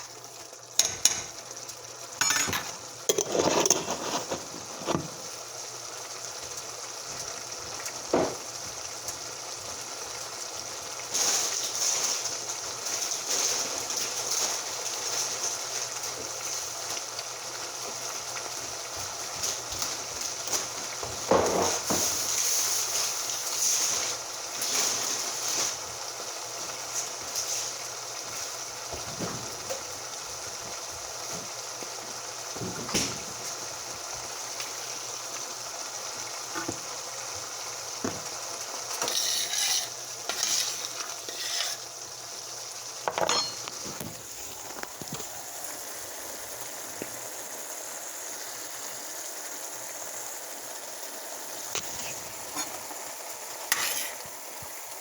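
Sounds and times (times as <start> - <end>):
food sizzling in a frying pan: 0.0 - 55.0
utensil scraping and knocking: 3.1 - 5.2, 39.0 - 41.8.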